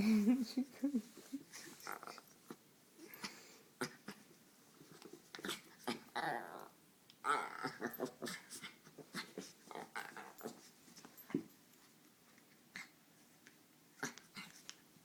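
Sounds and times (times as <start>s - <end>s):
dogs growling and snarling: 1.6s - 2.3s, 5.3s - 10.7s.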